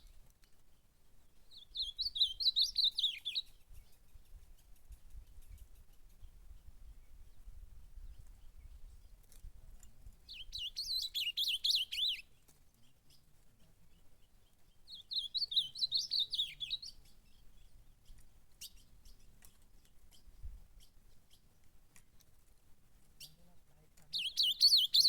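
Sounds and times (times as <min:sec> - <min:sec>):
bird singing warbled phrases: 0:01.5 - 0:04.8, 0:10.3 - 0:19.5, 0:23.2 - 0:25.0.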